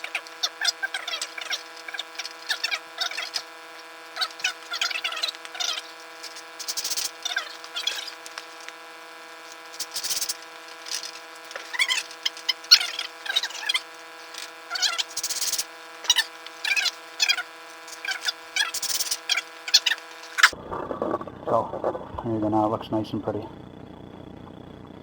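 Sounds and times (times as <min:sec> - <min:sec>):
steady hum: 0:00.0 - 0:25.0.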